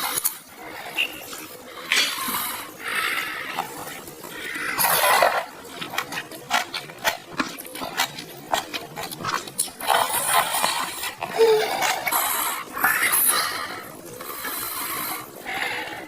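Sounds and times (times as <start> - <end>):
smacking and chewing clicks: 3.5 - 13.3
wet noodle slurps: 3.6 - 13.3.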